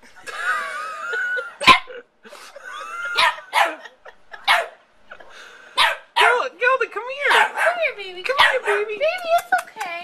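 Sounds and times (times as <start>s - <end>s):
dog barking: 3.2s - 4.8s, 5.8s - 6.5s, 7.3s - 8.9s.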